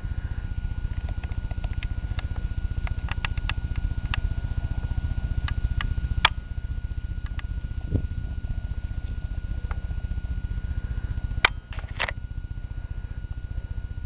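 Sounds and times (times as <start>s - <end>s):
vehicle engine throbbing: 0.0s - 14.0s
light clicks and rattles: 0.9s - 4.6s.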